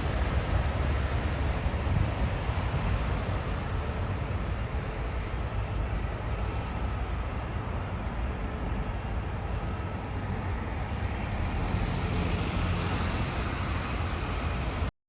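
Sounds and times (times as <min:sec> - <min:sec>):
jet engines rumbling: 0:00.0 - 0:14.9.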